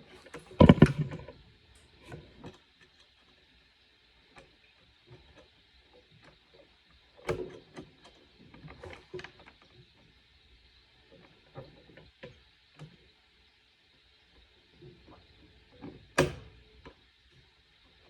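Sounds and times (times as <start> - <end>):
small clicks and knocks of parts: 0.2 - 3.5.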